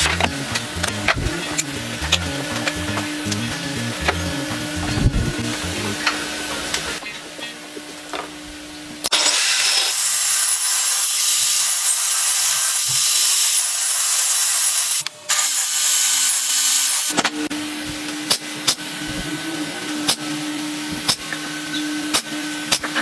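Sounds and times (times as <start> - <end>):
power tool hissing on wood: 9.2 - 17.1.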